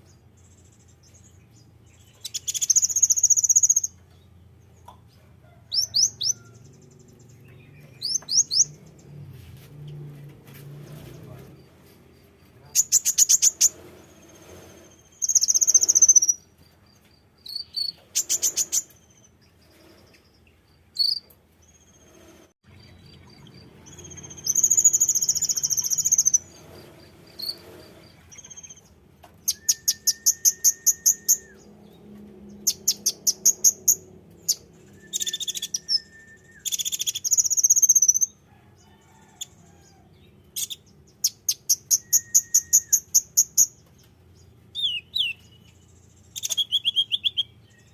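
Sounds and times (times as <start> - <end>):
high-pitched bird chirps: 2.0 - 4.0, 5.7 - 8.9, 15.0 - 16.5, 21.0 - 21.3, 22.7 - 26.6, 28.3 - 31.7, 32.6 - 38.4, 40.6 - 43.8, 44.7 - 47.9
short bird whistles: 29.5 - 31.6, 34.9 - 38.1, 41.9 - 43.1.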